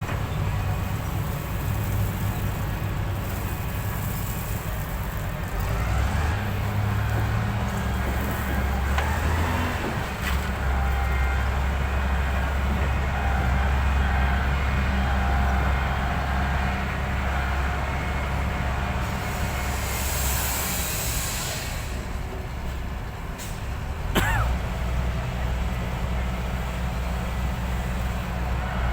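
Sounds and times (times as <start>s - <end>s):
excavator diesel engine running: 0.0s - 28.9s
hiss: 19.0s - 22.3s.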